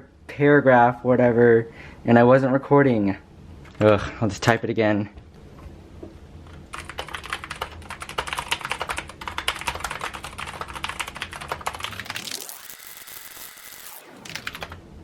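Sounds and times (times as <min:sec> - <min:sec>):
mechanical keyboard typing: 0:06.7 - 0:12.5, 0:14.0 - 0:14.8.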